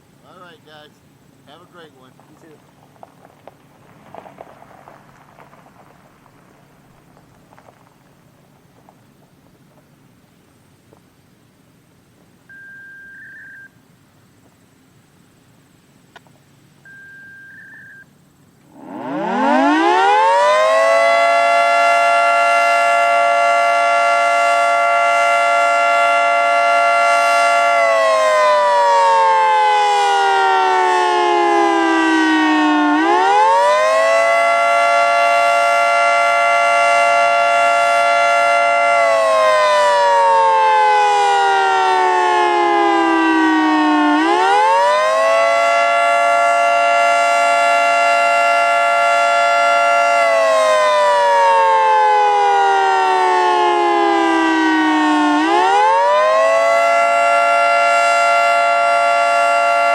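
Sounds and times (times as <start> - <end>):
short electronic beep: 12.5 - 13.8, 16.9 - 18.1
warning siren wailing: 18.7 - 59.9.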